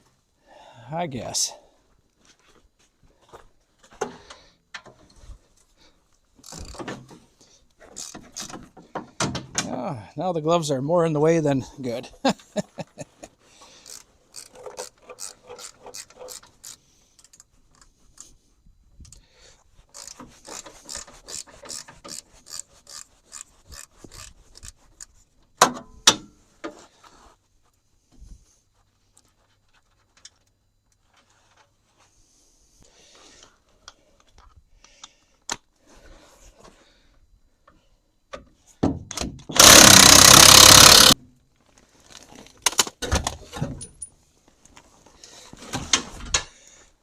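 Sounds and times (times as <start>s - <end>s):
ratchet wrench clicking: 13.8s - 17.9s, 19.9s - 24.8s, 39.6s - 41.2s.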